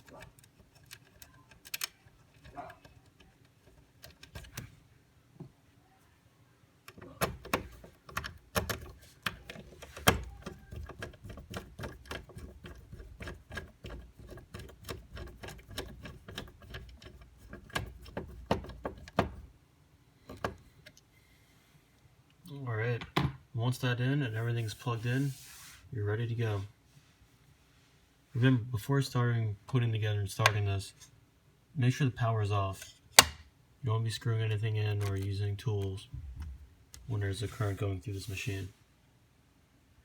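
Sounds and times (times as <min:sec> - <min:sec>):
clicking and knocking of parts: 0:00.0 - 0:04.7, 0:06.8 - 0:19.5, 0:20.2 - 0:21.0.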